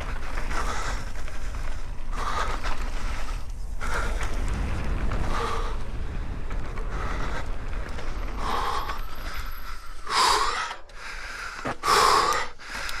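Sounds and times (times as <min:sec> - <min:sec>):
wind rumble on microphone: 0:00.0 - 0:10.5
person breathing hard: 0:00.4 - 0:04.4, 0:06.7 - 0:13.0.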